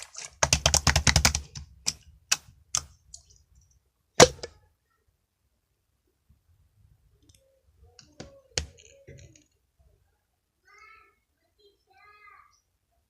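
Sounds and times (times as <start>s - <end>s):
sharp clicks and pops: 0.0s - 3.6s, 4.2s - 4.6s.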